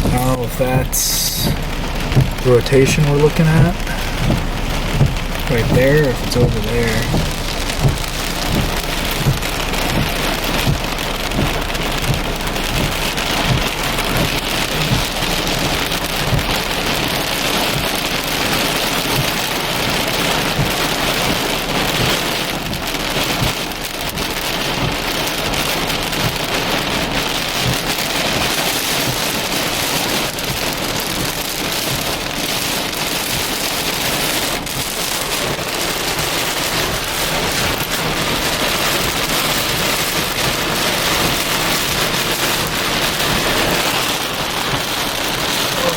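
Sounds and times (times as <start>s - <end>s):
heavy rain falling: 0.0s - 45.9s.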